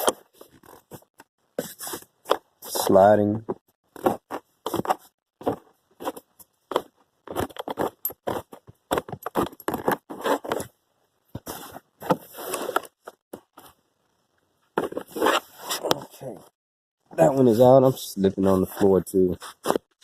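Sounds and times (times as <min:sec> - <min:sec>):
hand tool scraping and clicking: 0:06.0 - 0:10.7.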